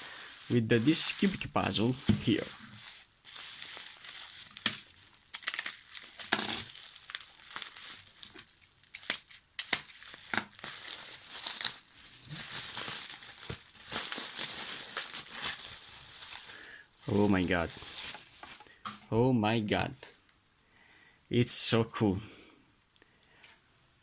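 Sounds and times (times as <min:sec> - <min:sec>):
packaging crinkling and rustling: 0:00.0 - 0:19.0.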